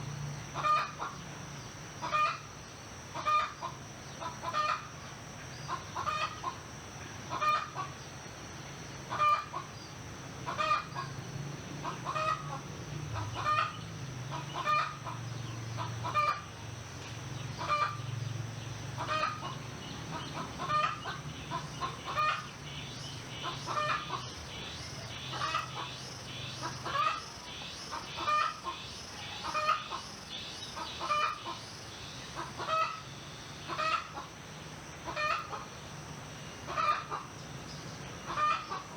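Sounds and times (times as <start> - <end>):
small birds chirping: 11.8 - 38.9
chicken clucking: 32.4 - 33.0, 33.7 - 34.2.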